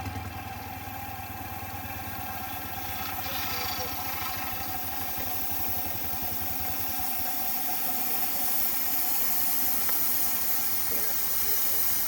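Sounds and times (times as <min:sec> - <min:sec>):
steam engine exhaust beats: 0:00.0 - 0:12.0
steam hissing: 0:00.4 - 0:12.0.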